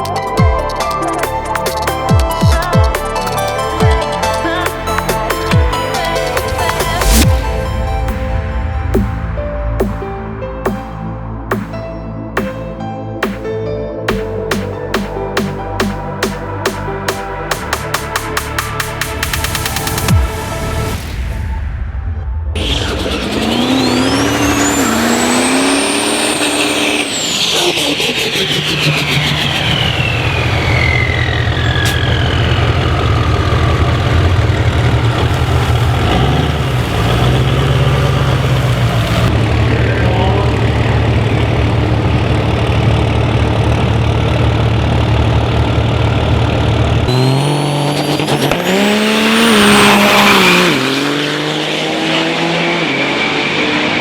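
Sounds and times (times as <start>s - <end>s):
diesel truck engine revving: 22.6s - 54.0s.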